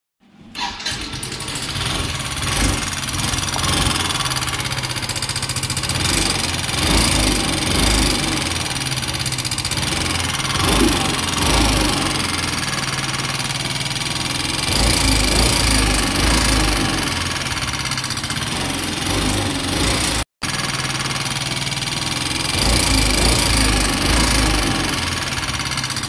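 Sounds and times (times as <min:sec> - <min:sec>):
scooter engine running roughly: 0:00.5 - 0:26.0.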